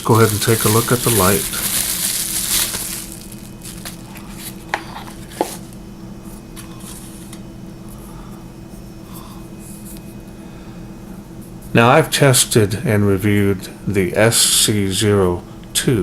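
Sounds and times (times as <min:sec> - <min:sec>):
flashlight handling rustle: 0:00.0 - 0:05.6
low background hum: 0:00.0 - 0:16.0.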